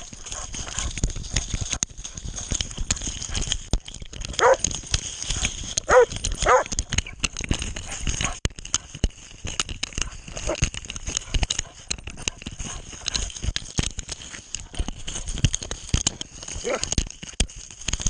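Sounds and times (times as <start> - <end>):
camera knocking and rustling: 0.0 - 18.0
dog barking: 4.4 - 4.6, 5.9 - 6.7.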